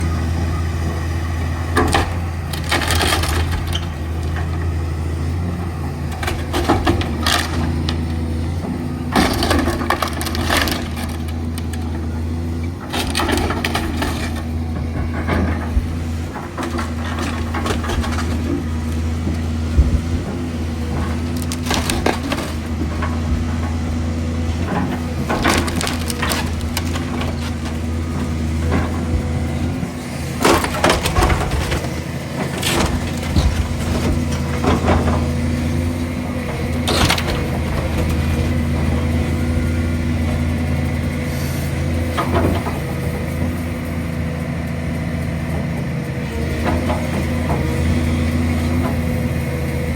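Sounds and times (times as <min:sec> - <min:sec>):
heavy machine engine running: 0:00.0 - 0:49.9
timber cracking and splintering: 0:09.1 - 0:11.8, 0:20.9 - 0:23.3, 0:24.6 - 0:28.0.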